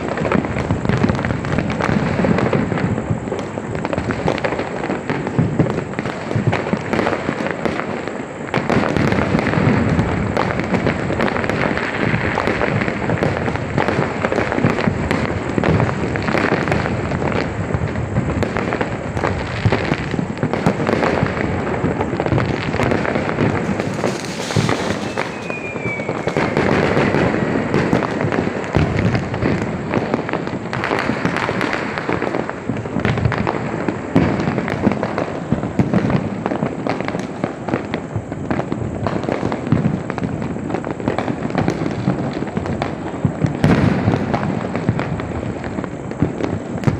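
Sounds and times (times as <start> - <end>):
firecrackers crackling: 0.0 - 46.9
falling whistle: 24.4 - 26.9.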